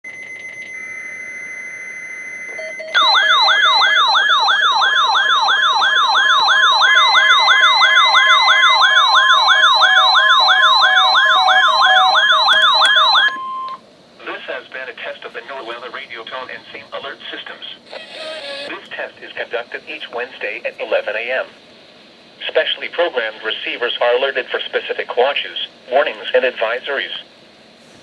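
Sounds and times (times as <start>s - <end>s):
electronic siren yelping: 3.0s - 13.8s.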